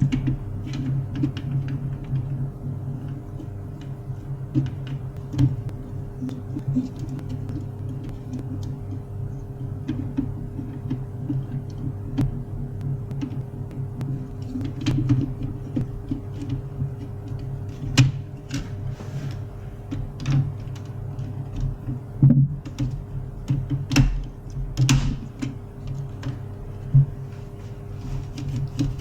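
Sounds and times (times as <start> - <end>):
steady low hum: 0.0 - 29.0
printer mechanism clicks and knocks: 9.7 - 18.8, 19.9 - 26.5.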